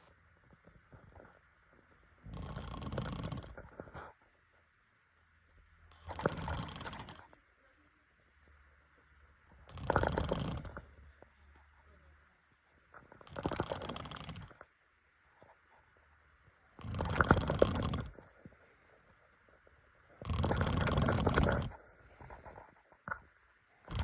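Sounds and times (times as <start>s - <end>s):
quiet breathing: 0.0s - 4.7s, 5.7s - 24.0s
person snoring: 2.2s - 3.7s, 5.9s - 7.3s, 9.7s - 10.9s, 13.2s - 14.6s, 16.8s - 18.2s, 20.2s - 22.6s.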